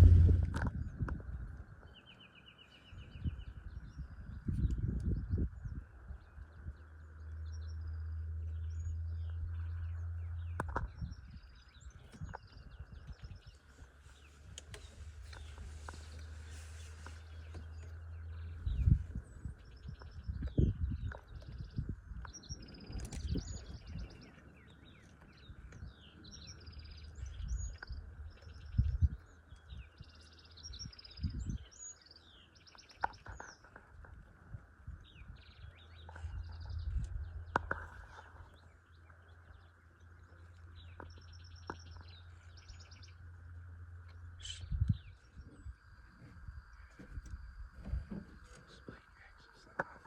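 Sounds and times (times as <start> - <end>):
low thuds: 0.0 - 1.2
birds chirping and trilling: 0.0 - 50.0.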